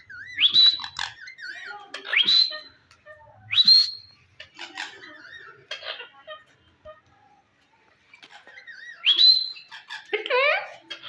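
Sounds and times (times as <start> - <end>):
parakeet warbled whistle: 0.2 - 1.2.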